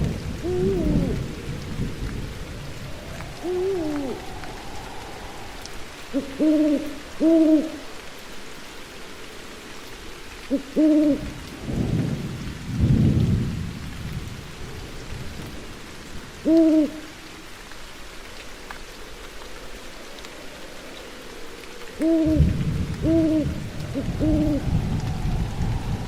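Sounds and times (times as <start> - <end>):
low rolling thunder: 0.0 - 7.7, 11.2 - 17.0, 22.0 - 26.0
steady rain: 0.0 - 26.0
owl hooting: 0.4 - 1.2, 3.2 - 7.9, 10.5 - 11.4, 16.4 - 17.1, 22.0 - 25.1.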